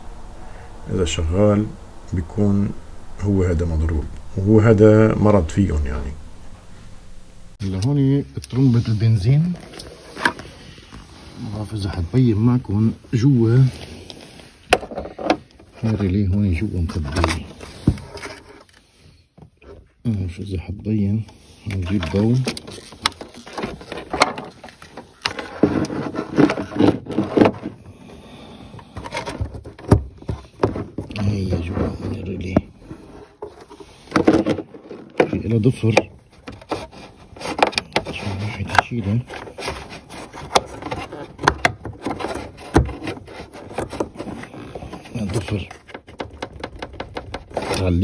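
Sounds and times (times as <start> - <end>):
handling clicks and knocks: 21.7 - 27.9, 28.7 - 48.0
hands clicking on plastic parts: 45.3 - 47.8.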